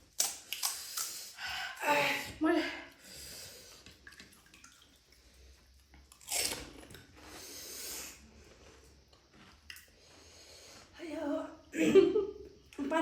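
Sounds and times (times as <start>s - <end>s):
chewing: 3.7s - 7.5s, 8.1s - 10.9s.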